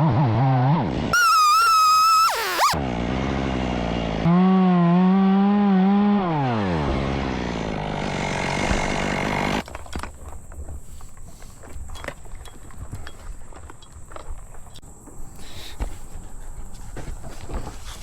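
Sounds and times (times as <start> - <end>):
chainsaw revving and idling: 1.3 - 9.6.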